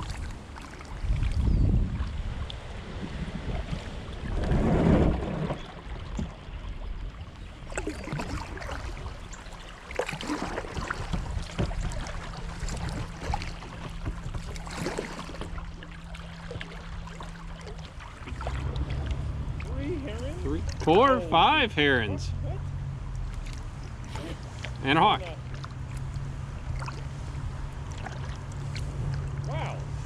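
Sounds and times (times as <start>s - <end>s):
paddle splashing in water: 0.0s - 21.5s, 23.1s - 30.0s
water rushing: 0.0s - 30.0s.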